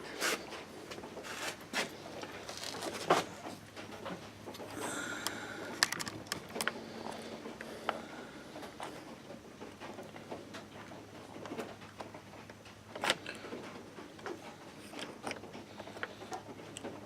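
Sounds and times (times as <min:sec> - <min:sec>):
small parts clicking and tapping: 0:04.5 - 0:06.8.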